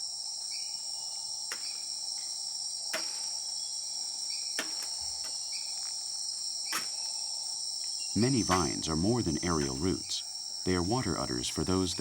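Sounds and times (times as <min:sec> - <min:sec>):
insect chorus buzzing drone: 0:00.0 - 0:12.0.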